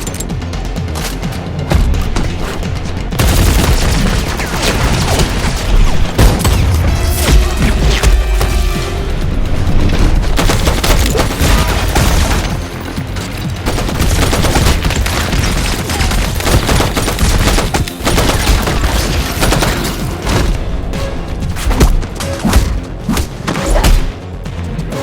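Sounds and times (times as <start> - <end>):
film music: 0.0 - 25.0
rapid gunfire: 2.7 - 6.8, 10.3 - 12.8, 13.5 - 20.2.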